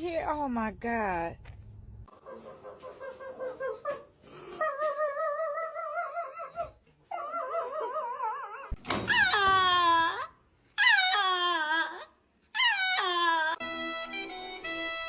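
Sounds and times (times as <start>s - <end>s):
dog howling and whining: 3.4s - 13.6s.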